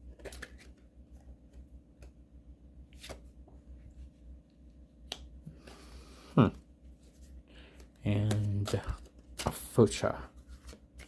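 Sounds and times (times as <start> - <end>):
low room hum: 0.0 - 11.0
cards clicking and sliding: 0.1 - 0.8, 7.8 - 9.9.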